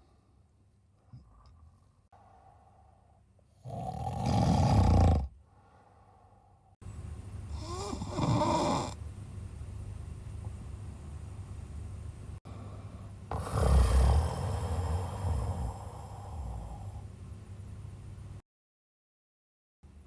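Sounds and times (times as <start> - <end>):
man snoring heavily: 3.6 - 5.3, 7.5 - 9.0, 13.3 - 17.1.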